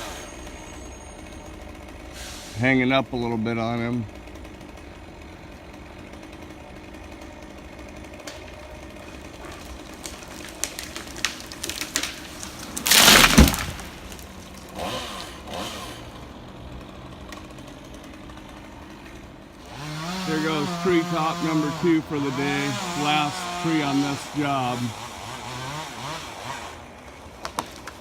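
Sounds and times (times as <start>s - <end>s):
chainsaw running: 0.0s - 27.9s
wood cracking and snapping: 8.0s - 15.4s, 27.1s - 28.0s
treetop crashing to ground: 10.0s - 14.7s.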